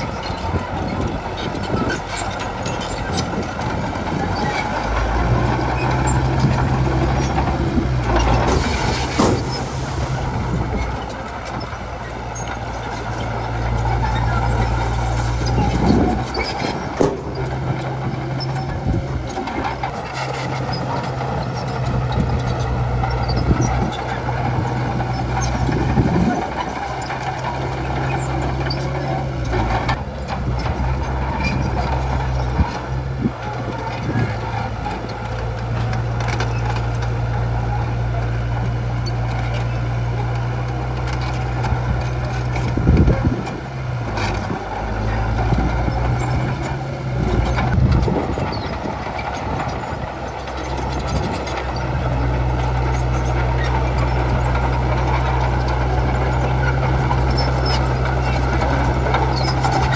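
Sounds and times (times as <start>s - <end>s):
bulldozer diesel engine: 0.0s - 59.9s
sharp metal clanks: 15.2s - 19.5s.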